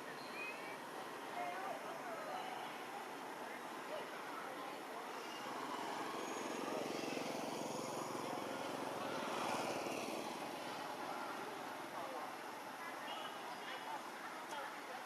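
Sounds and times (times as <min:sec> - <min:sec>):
passing vehicle engine: 0:05.1 - 0:11.9.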